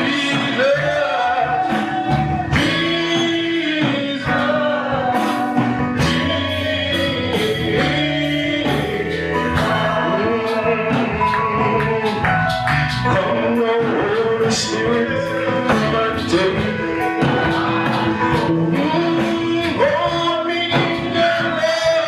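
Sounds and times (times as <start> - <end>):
gospel band playing: 0.0 - 22.0
person singing: 0.0 - 22.0.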